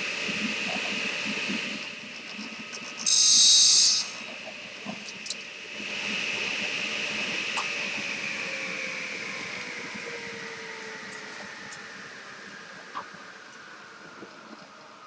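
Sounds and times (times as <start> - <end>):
saw blade cutting wood: 2.8 - 4.3
table saw running: 2.9 - 4.4.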